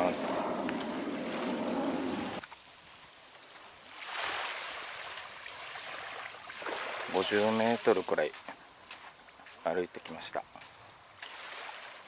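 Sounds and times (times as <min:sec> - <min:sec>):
rushing water: 0:00.0 - 0:12.0.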